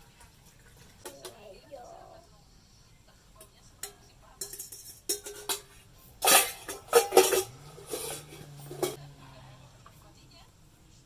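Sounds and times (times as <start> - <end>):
low steady hum: 1.0 - 11.0
utensils clinking against pot: 3.4 - 9.0.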